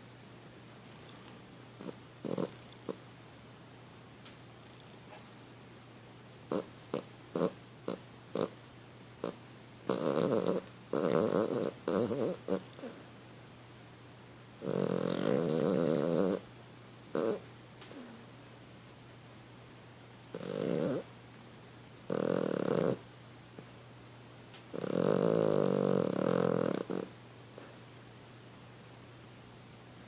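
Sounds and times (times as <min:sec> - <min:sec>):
dog snoring and snorting: 0:01.8 - 0:03.0, 0:06.5 - 0:08.6, 0:09.2 - 0:13.2, 0:14.6 - 0:16.5, 0:17.1 - 0:18.4, 0:20.3 - 0:21.1, 0:22.1 - 0:23.8, 0:24.7 - 0:27.9.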